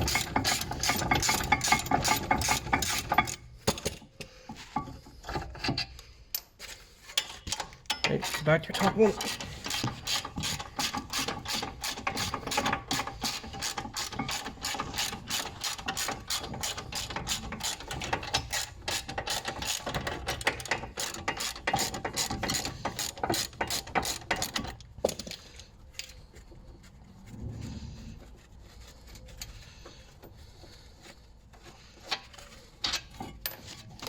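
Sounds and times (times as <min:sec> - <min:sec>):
ratchet wrench clicking: 0:09.2 - 0:25.3.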